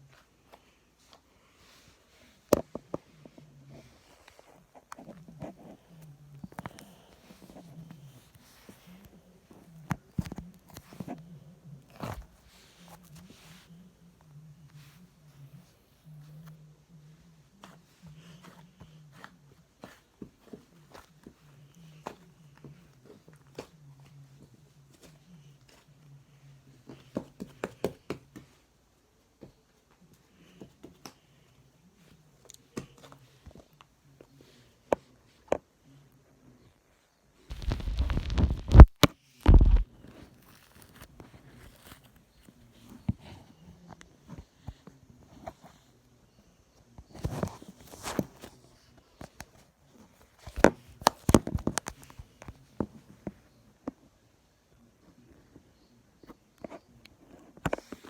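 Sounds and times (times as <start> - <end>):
faint low hum: 0.0 - 58.0
slime squishing and popping: 37.5 - 39.8.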